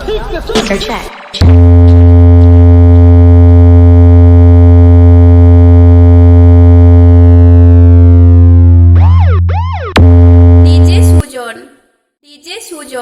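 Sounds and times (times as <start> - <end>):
loud synthesizer bass tone: 1.0 - 11.3.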